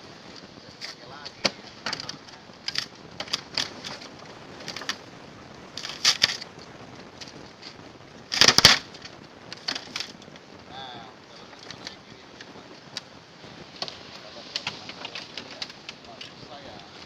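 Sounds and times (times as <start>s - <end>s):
crunching clatter: 0.0s - 10.6s, 11.4s - 17.0s.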